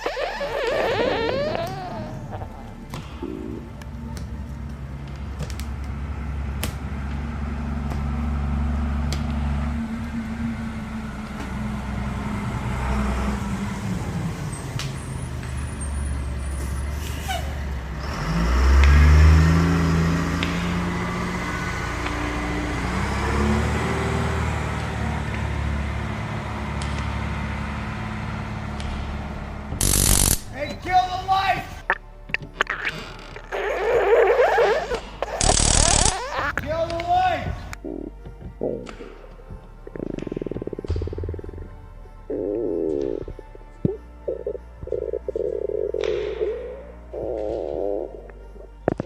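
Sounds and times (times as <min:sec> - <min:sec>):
vehicle engine running and revving: 0:02.8 - 0:30.5.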